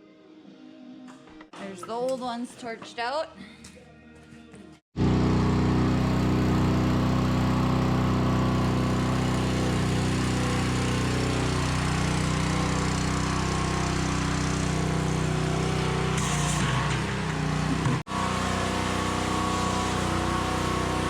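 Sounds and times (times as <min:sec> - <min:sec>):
engine running steadily: 0:05.0 - 0:21.0.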